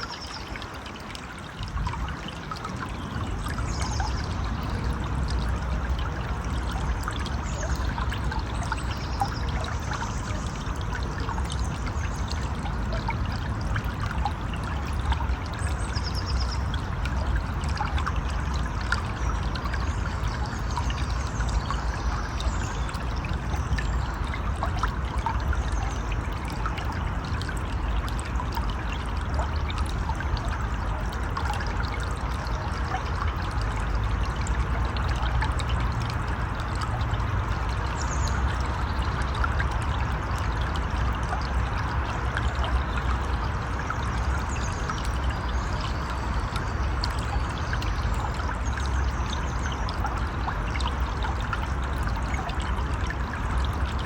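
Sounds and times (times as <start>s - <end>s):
river water flowing: 0.0s - 54.0s.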